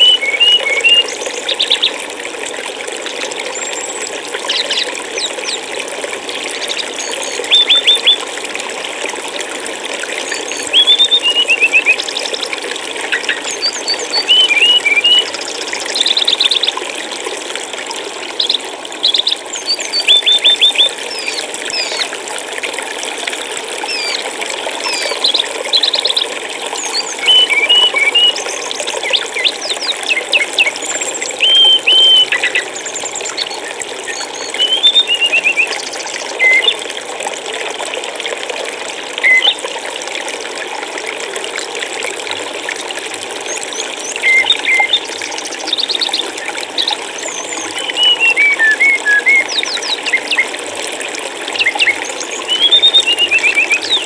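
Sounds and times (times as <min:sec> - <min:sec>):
water flowing: 0:00.0 - 0:54.0
songbirds chirping and trilling: 0:13.0 - 0:16.8, 0:24.9 - 0:36.8, 0:43.5 - 0:50.5, 0:51.6 - 0:54.0.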